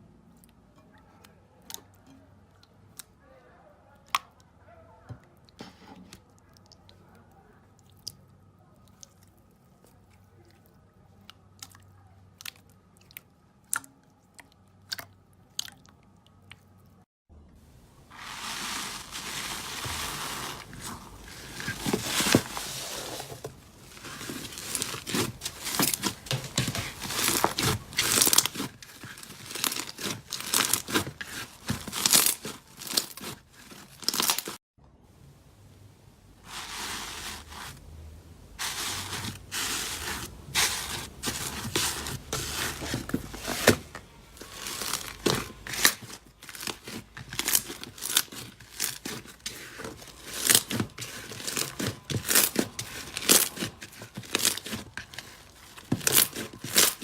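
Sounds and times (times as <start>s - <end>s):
slime crackling and popping: 23.7s - 34.6s.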